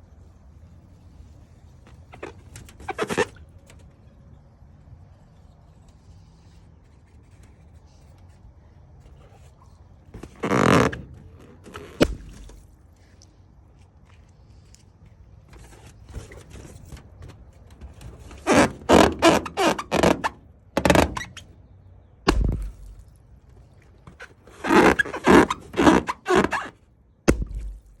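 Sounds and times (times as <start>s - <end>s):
balloons popping: 10.2s - 12.6s, 18.2s - 21.4s, 22.3s - 23.1s, 24.1s - 26.7s, 27.3s - 28.0s.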